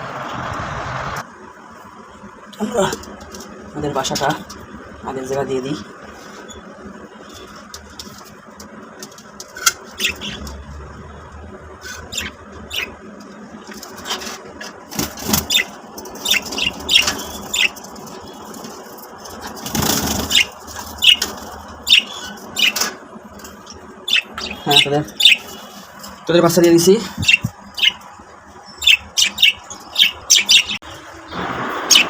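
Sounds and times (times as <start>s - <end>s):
budgerigars chirping: 9.9s - 10.6s, 11.8s - 13.0s, 15.2s - 18.6s, 19.3s - 25.9s, 27.2s - 32.0s.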